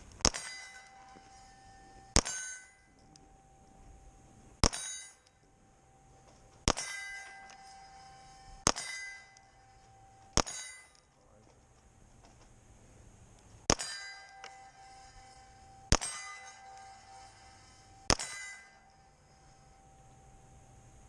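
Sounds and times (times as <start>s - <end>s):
metallic ringing: 0.0s - 11.2s, 13.7s - 21.0s
bullets striking steel plates: 0.2s - 3.2s, 4.6s - 5.4s, 6.6s - 11.2s, 13.7s - 19.2s.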